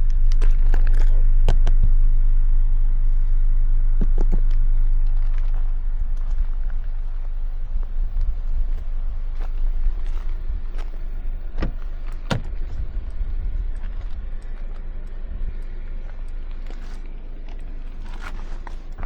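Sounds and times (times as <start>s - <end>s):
car engine and road rumble: 0.0s - 19.0s
faint clicks: 8.2s - 19.0s.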